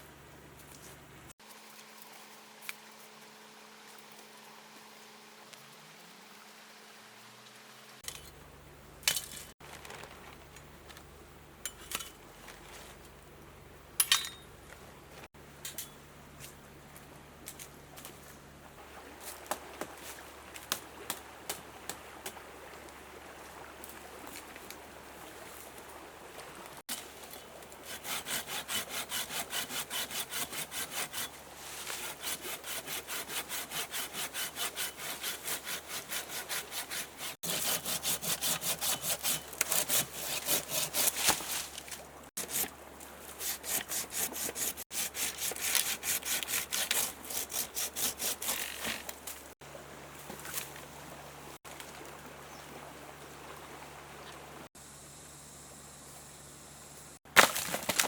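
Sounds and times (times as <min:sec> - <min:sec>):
hand saw cutting wood: 0:27.7 - 0:49.2.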